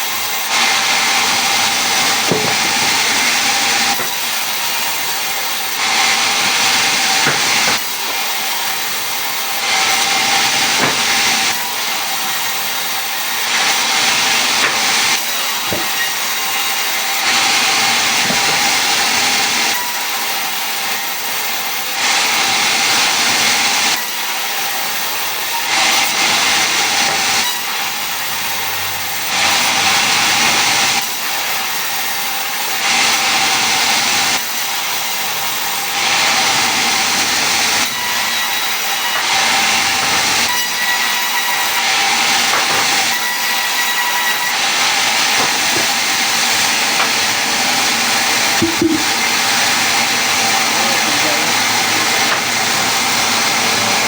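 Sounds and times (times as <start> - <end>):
power tool cutting wood: 0.0 - 54.0.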